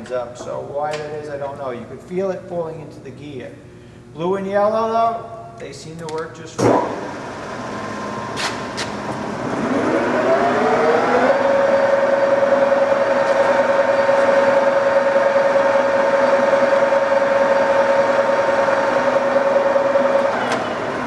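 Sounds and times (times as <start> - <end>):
lathe high-pitched whine: 9.0 - 21.0.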